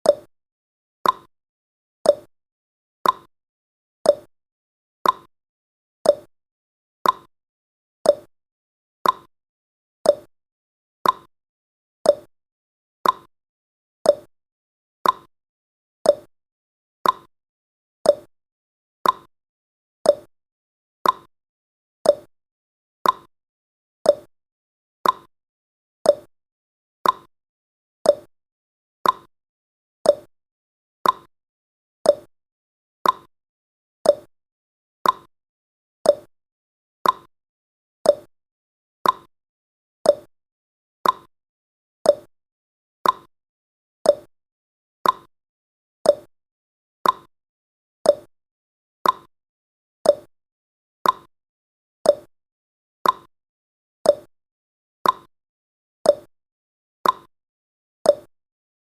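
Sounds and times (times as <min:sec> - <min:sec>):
clock ticking: 0:31.0 - 0:31.3, 0:37.0 - 0:37.3, 0:39.0 - 0:39.3, 0:41.0 - 0:41.3, 0:45.0 - 0:45.3, 0:47.0 - 0:47.3.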